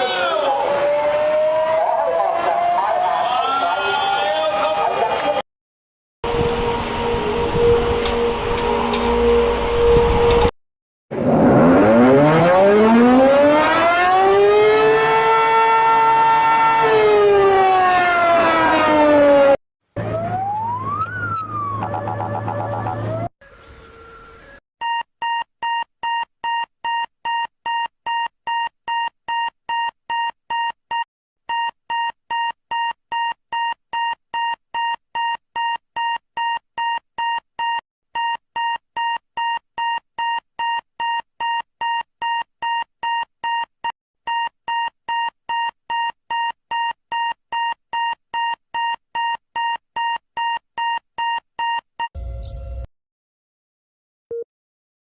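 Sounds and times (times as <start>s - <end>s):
emergency alert alarm beeping: 20.1s - 23.3s.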